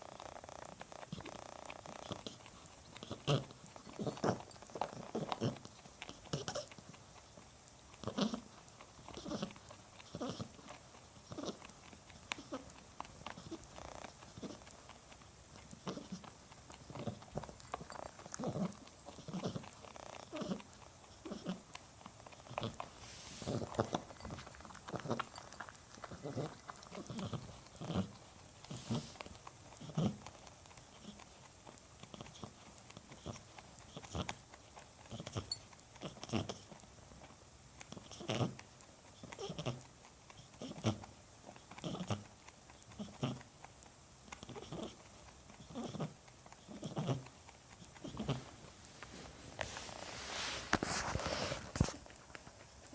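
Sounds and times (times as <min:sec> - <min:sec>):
rabbit wheezing: 0:00.0 - 0:06.8, 0:15.8 - 0:31.3, 0:44.3 - 0:52.6.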